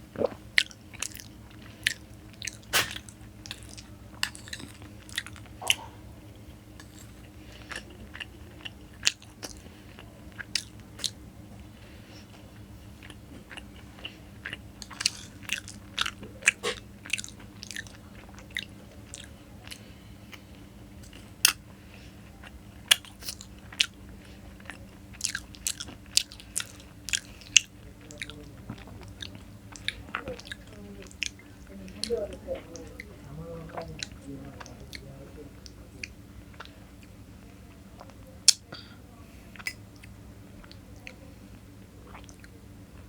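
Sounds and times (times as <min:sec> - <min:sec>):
faint steady hum: 0:00.0 - 0:43.0
person chewing: 0:00.1 - 0:33.0, 0:33.6 - 0:37.2, 0:39.6 - 0:41.2, 0:42.1 - 0:42.6
wet clicks and lip smacks: 0:00.2 - 0:05.9.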